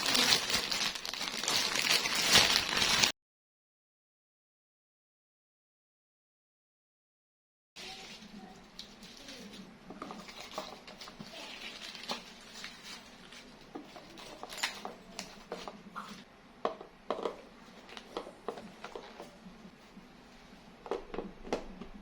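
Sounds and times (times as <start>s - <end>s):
food rustling: 0.0s - 3.1s, 7.8s - 16.2s.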